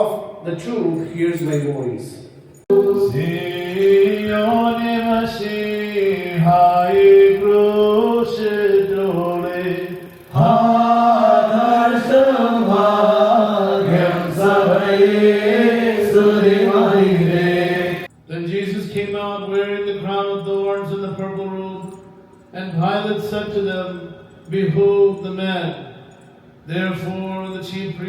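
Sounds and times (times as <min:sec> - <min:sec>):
liturgical chant singing: 0:02.7 - 0:18.1.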